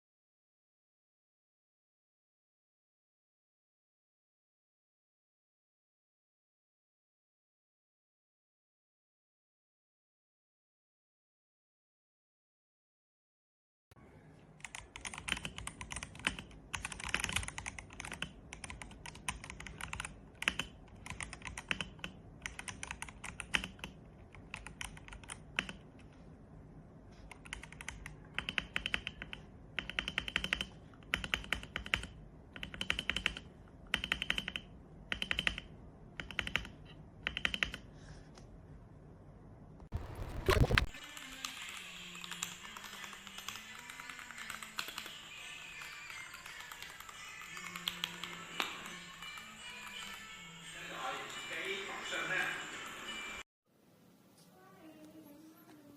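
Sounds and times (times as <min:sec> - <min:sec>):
mechanical keyboard typing: 0:14.6 - 0:25.9, 0:27.3 - 0:37.9, 0:40.0 - 0:45.2, 0:45.8 - 0:48.4.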